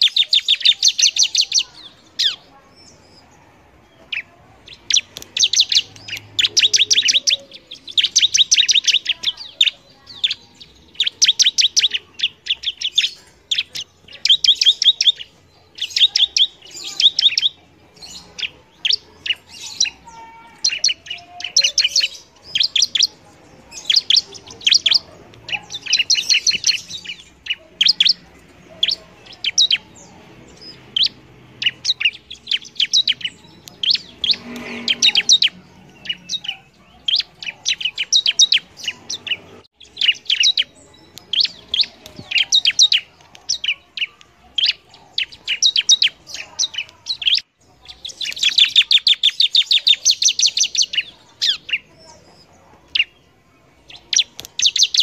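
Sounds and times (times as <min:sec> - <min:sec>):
bird chirping: 0:00.0 - 0:55.0.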